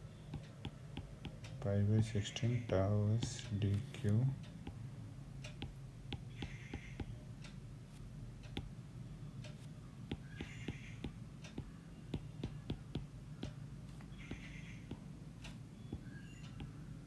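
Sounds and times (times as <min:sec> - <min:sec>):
pen writing on paper: 0:05.6 - 0:07.1, 0:09.5 - 0:16.8.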